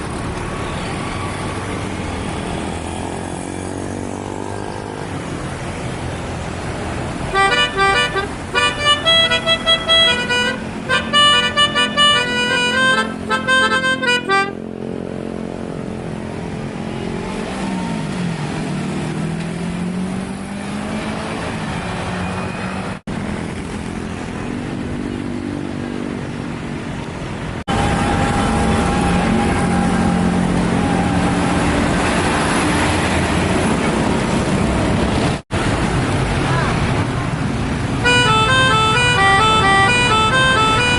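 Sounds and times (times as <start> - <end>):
bus engine revving: 0.0 - 23.7, 27.4 - 40.9
bus horn playing a tune: 7.3 - 14.7, 38.0 - 40.9.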